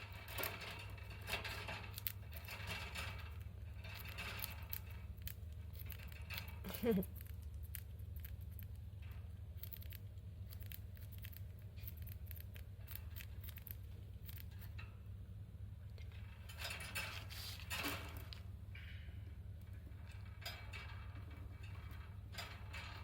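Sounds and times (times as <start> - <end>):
low steady hum: 0.0 - 23.0
parakeet crunching cabbage leaf: 3.9 - 14.8.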